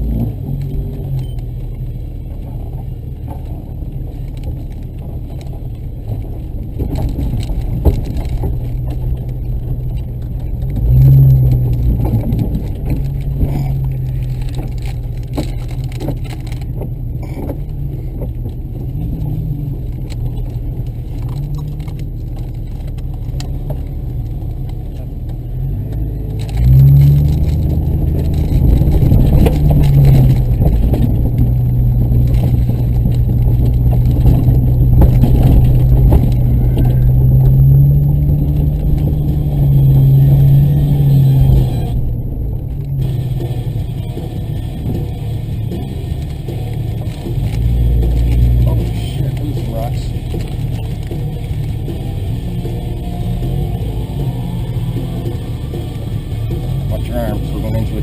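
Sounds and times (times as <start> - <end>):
vehicle engine humming and revving: 0.0 - 58.0
clicks and rattles: 2.3 - 58.0.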